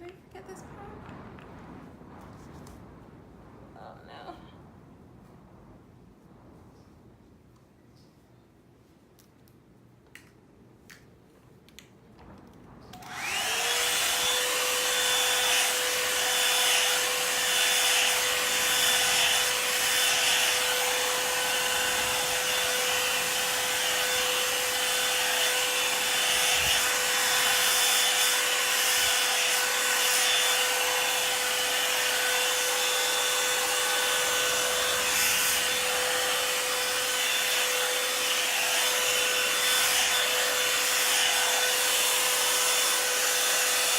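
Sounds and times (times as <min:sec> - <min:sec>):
hair dryer brush whine and rushing air: 0:12.9 - 0:43.9.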